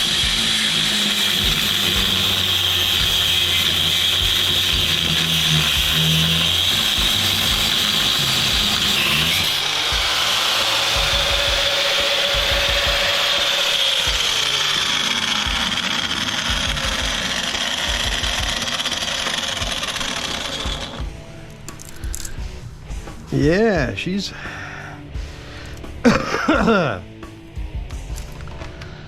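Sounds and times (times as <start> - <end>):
angle grinder cutting metal: 0.0 - 21.2.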